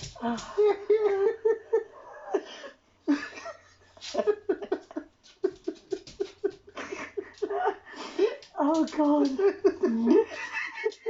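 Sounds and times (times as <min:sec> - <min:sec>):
breathless laughter: 0:00.2 - 0:08.4.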